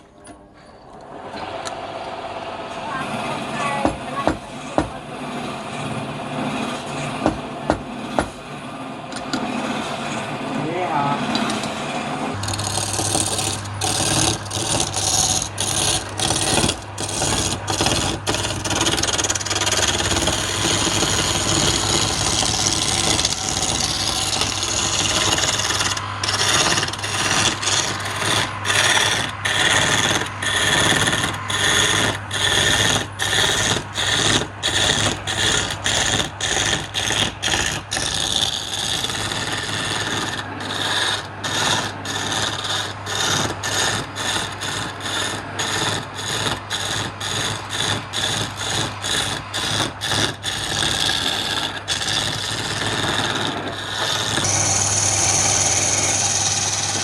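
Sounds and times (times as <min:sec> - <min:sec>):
turning tool scraping wood: 0:02.8 - 0:57.0
wood lathe humming: 0:02.8 - 0:57.0.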